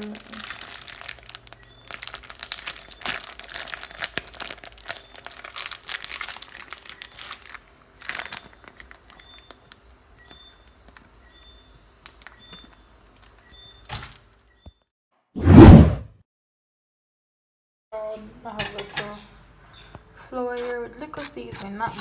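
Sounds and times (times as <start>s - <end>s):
plastic packaging crinkling: 0.0s - 14.3s.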